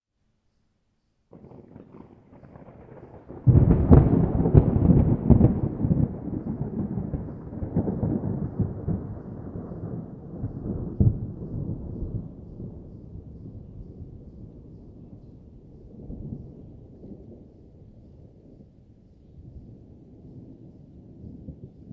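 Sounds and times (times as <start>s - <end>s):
thunderclap with rolling rumble: 1.3s - 21.9s.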